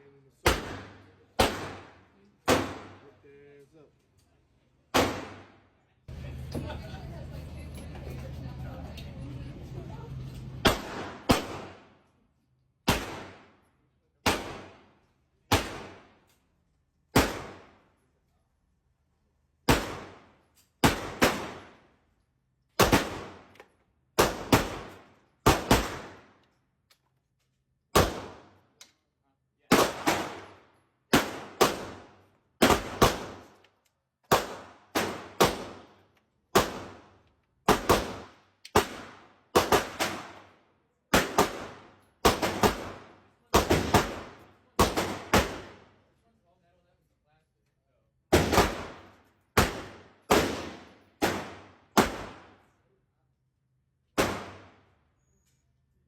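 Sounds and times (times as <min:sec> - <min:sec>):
gunshots: 0:00.4 - 0:03.0, 0:04.9 - 0:05.6, 0:10.6 - 0:12.0, 0:12.8 - 0:13.6, 0:14.2 - 0:14.9, 0:15.5 - 0:16.2, 0:17.1 - 0:17.8, 0:19.7 - 0:21.8, 0:22.8 - 0:23.5, 0:24.2 - 0:26.3, 0:27.9 - 0:28.6, 0:29.7 - 0:33.6, 0:34.3 - 0:40.5, 0:41.1 - 0:46.0, 0:48.3 - 0:52.7, 0:54.2 - 0:54.9.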